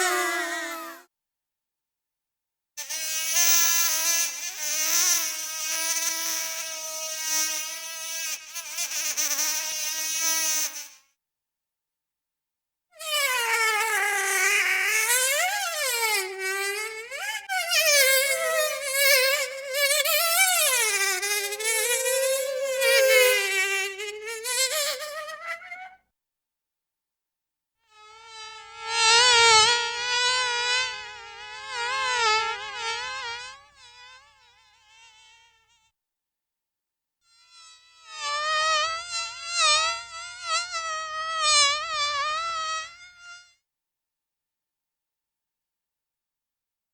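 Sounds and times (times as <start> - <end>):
flying insect buzzing: 0.0 - 1.0, 2.8 - 11.0, 13.0 - 26.0, 27.9 - 35.9, 37.4 - 43.5
insect wings buzzing: 13.8 - 25.9.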